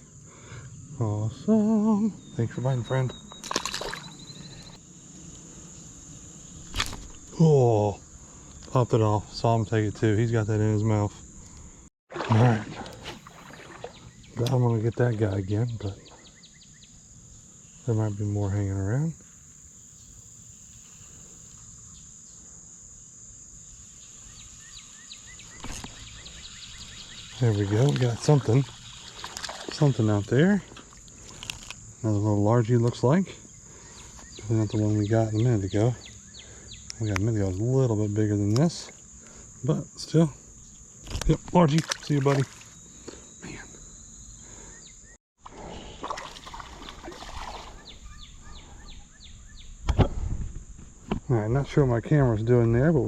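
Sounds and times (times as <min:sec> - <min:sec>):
crickets trilling: 0:00.0 - 0:53.0
insects droning: 0:00.0 - 0:53.0
water sloshing: 0:03.4 - 0:04.7, 0:12.1 - 0:14.1, 0:27.0 - 0:31.4, 0:41.3 - 0:42.8, 0:45.5 - 0:48.0.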